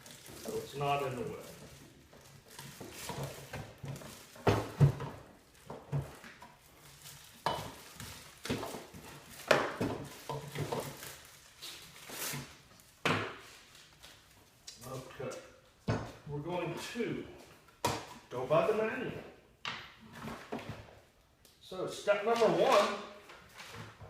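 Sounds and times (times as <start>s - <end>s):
plastic packaging crackling: 0.0s - 4.5s, 6.6s - 12.9s.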